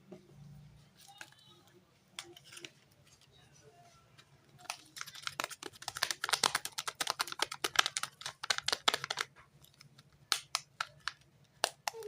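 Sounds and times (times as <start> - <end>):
packaging crinkling: 4.6 - 12.0.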